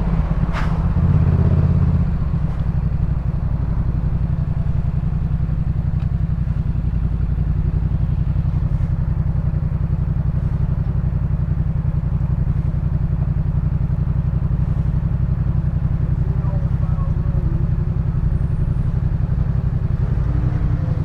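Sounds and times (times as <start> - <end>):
motorcycle engine running: 0.0 - 21.0.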